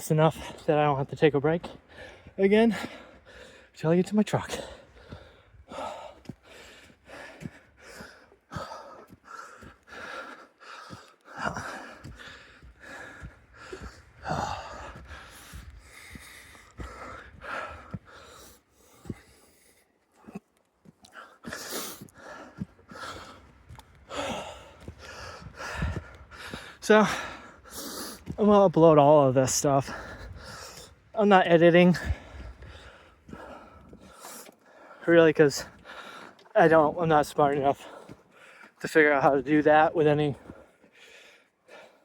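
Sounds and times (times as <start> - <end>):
man gasping breaths: 1.6 - 3.8, 4.5 - 20.4, 21.0 - 28.4, 29.8 - 31.2, 31.9 - 36.5, 40.4 - 42.0.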